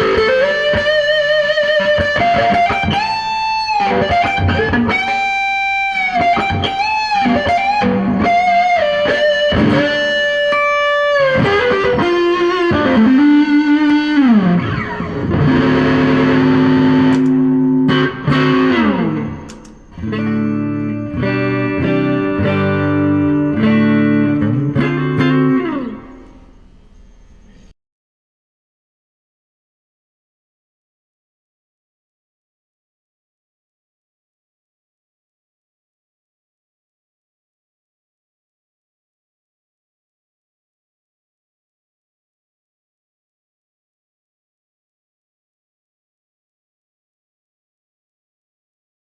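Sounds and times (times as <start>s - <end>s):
fuzz electric guitar: 0.0s - 26.8s.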